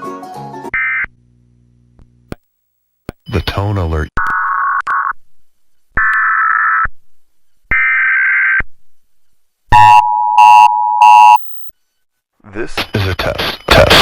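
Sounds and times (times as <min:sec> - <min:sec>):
two-tone attention signal blasts: 0:09.8 - 0:11.7.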